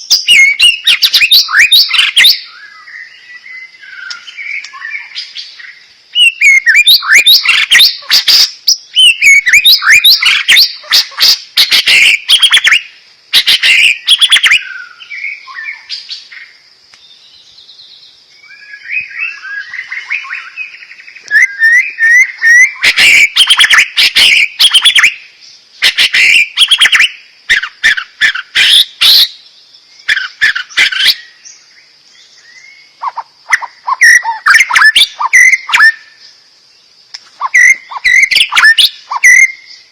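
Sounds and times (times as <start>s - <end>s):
songbird singing: 0.0s - 39.9s.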